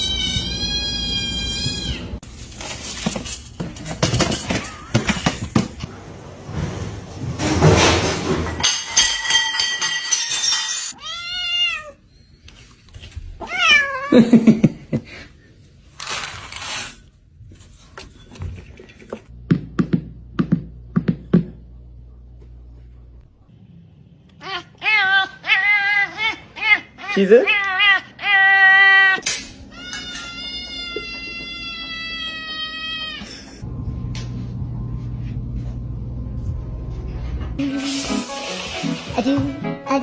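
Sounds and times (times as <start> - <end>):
cat meowing: 0.0 - 2.2, 11.0 - 12.0, 13.4 - 14.1, 24.3 - 33.3.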